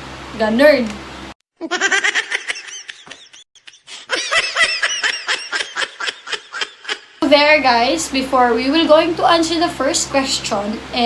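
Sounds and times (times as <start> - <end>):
person laughing high-pitched: 1.6 - 7.2.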